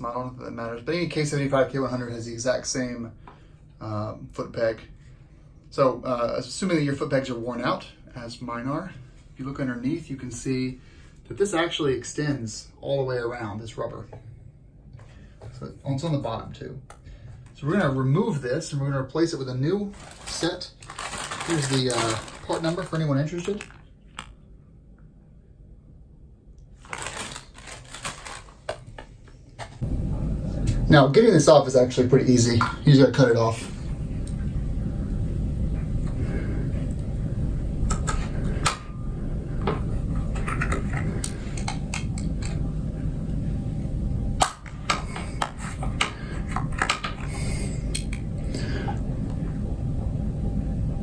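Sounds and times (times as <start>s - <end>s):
rustling handling noise: 19.8s - 24.4s, 26.7s - 29.8s.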